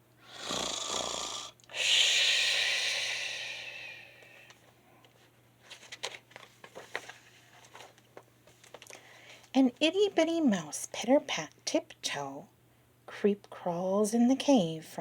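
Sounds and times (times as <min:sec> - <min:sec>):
person mock snoring: 0:00.2 - 0:04.1.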